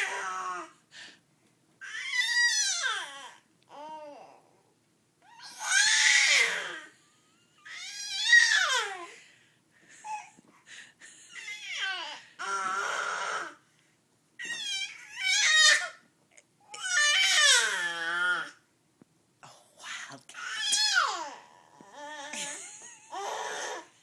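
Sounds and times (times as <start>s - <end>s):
baby raspy cry: 0.0s - 0.7s, 1.8s - 4.4s, 5.2s - 6.9s, 7.6s - 9.1s, 11.3s - 13.6s, 14.4s - 16.0s, 16.7s - 18.6s, 20.4s - 24.0s
baby squealing and screeching: 1.8s - 3.3s, 5.3s - 6.8s, 7.6s - 9.1s, 14.4s - 16.0s, 16.8s - 18.6s, 20.4s - 22.4s.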